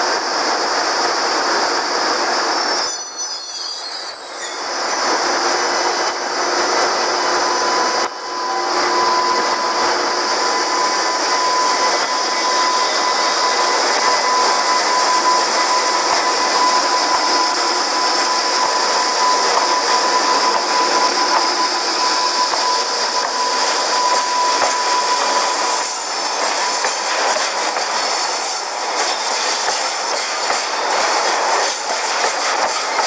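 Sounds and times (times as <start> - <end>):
train rail running noise: 0.0 - 33.0
high steady whine: 4.6 - 29.9.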